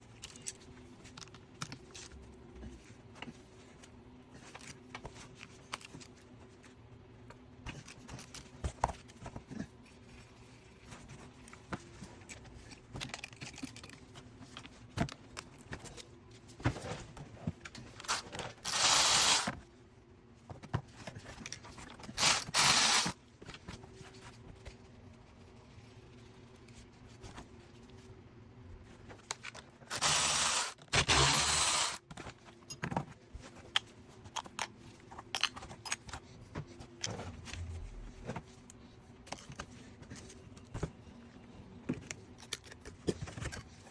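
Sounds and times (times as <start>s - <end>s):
loud hissing bursts: 18.7s - 19.5s, 22.2s - 23.2s, 29.9s - 32.0s.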